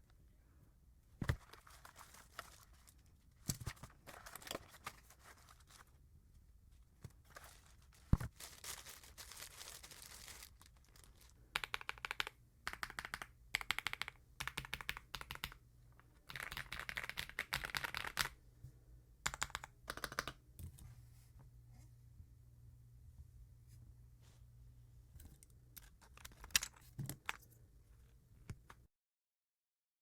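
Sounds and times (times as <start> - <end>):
rustling: 7.0 - 11.4
mechanical keyboard typing: 11.6 - 15.6, 16.3 - 18.3, 19.3 - 20.4.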